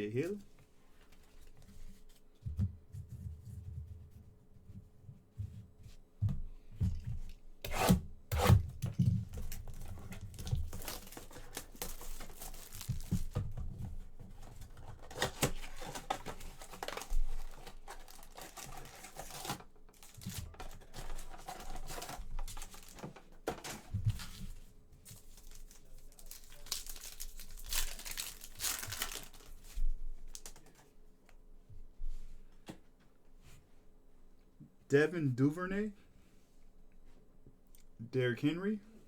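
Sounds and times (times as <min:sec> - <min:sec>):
foil wrapper tearing and crinkling: 0:10.3 - 0:13.3, 0:15.1 - 0:23.1, 0:25.2 - 0:29.6
cards rustling: 0:25.1 - 0:30.8.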